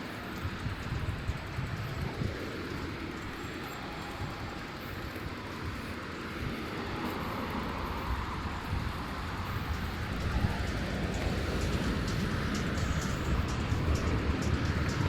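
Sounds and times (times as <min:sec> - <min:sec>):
wind rumbling on microphone: 0:00.0 - 0:15.0.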